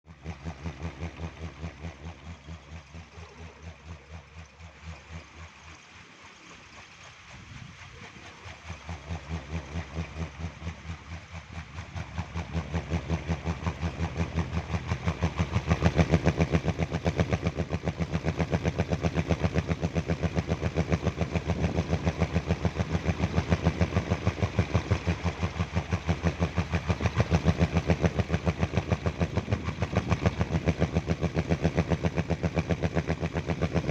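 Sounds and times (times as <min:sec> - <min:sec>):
wooden propeller throbbing hum: 0:00.0 - 0:33.9.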